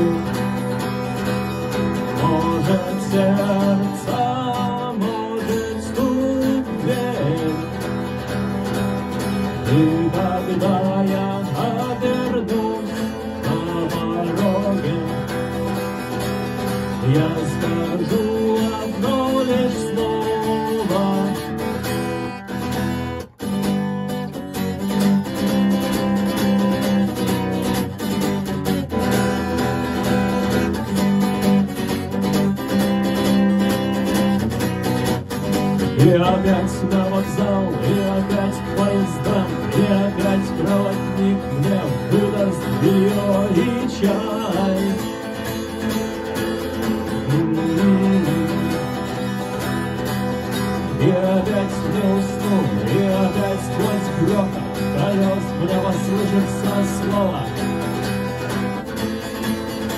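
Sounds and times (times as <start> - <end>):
person singing: 0.0 - 1.1, 2.0 - 8.2, 9.0 - 15.8, 16.8 - 22.3, 35.9 - 45.4, 47.1 - 57.9
acoustic guitar strumming: 0.0 - 59.9.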